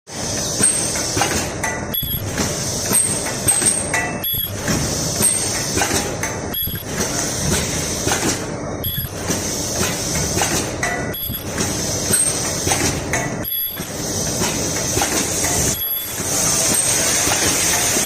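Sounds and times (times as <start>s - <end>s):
welding machine hiss and noise: 0.1s - 18.0s
short high-pitched squeals: 13.4s - 13.8s, 15.7s - 17.0s.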